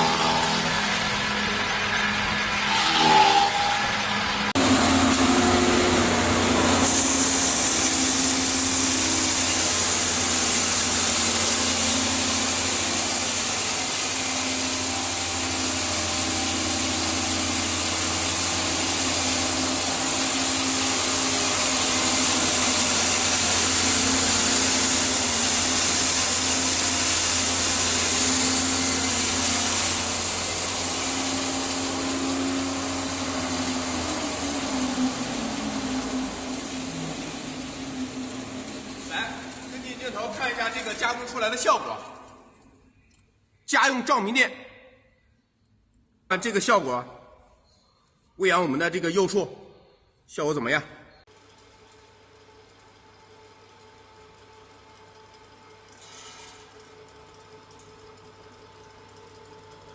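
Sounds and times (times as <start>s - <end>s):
machine humming and hissing: 0.0s - 41.4s.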